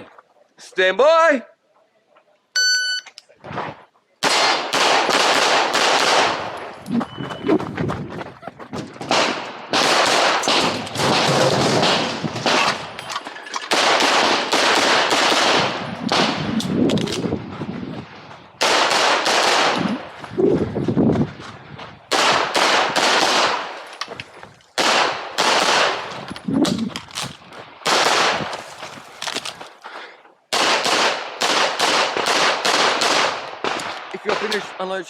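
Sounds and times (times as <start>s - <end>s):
shot timer beep: 2.6s - 3.2s
rapid pistol shots: 4.2s - 6.6s, 9.1s - 12.9s, 13.7s - 17.2s, 18.6s - 19.9s, 22.1s - 23.8s, 24.8s - 26.1s, 27.8s - 28.5s, 30.5s - 34.6s.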